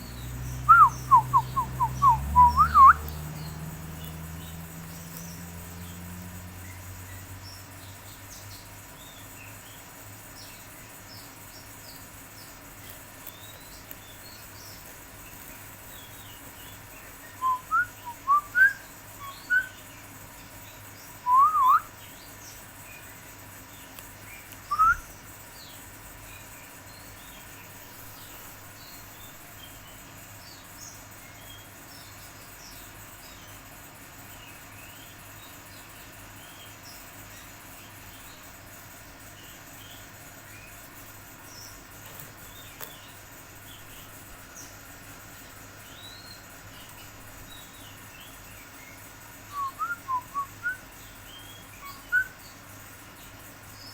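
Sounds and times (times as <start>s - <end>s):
small birds chirping faintly: 0.0s - 53.9s
loud short whistled notes: 24.7s - 25.0s.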